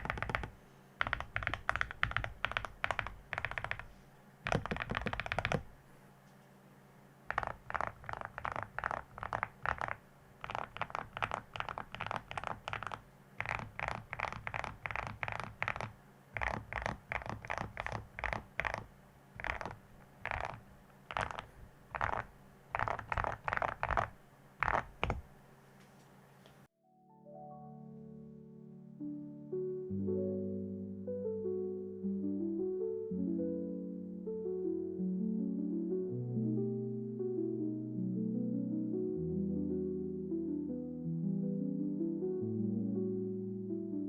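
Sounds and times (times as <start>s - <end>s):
mechanical keyboard typing: 0.0s - 5.7s, 7.3s - 25.3s.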